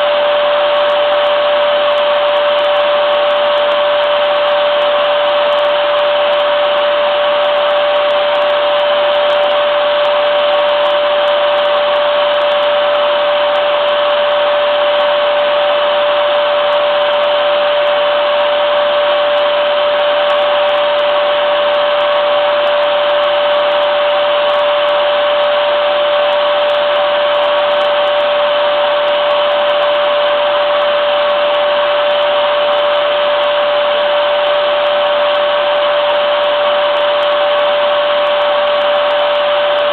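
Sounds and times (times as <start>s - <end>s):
vacuum cleaner motor running: 0.0s - 39.9s.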